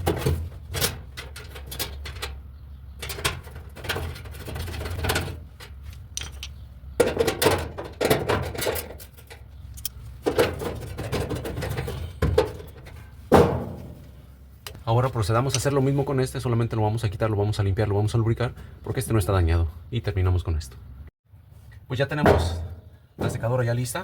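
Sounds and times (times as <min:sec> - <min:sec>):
metal parts clicking and knocking: 0:00.0 - 0:13.2.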